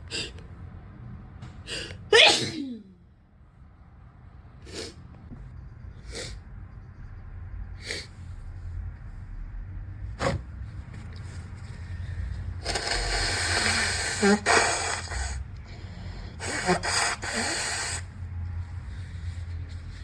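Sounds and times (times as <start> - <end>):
person blowing a snotty nose: 12.6 - 15.4, 16.3 - 18.1
sharp nasal burst: 12.6 - 15.4, 16.4 - 18.1.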